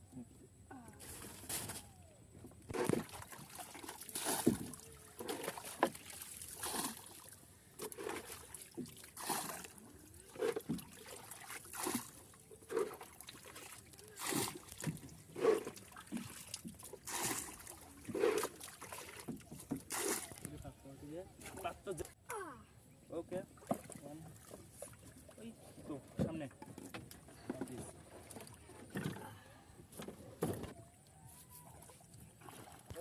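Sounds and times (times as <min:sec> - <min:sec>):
river water splashing: 0:02.7 - 0:20.7, 0:23.5 - 0:25.7, 0:31.7 - 0:33.0.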